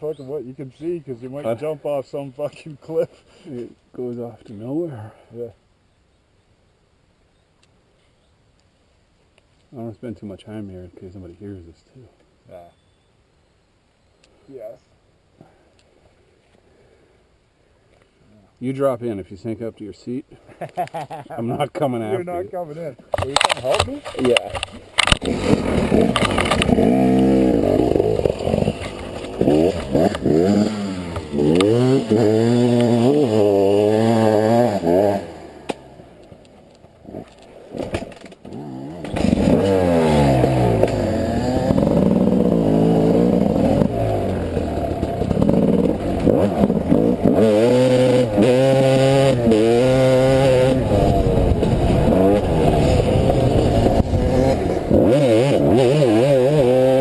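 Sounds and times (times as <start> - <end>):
dirt bike engine revving: 25.0 - 36.3, 37.0 - 57.0.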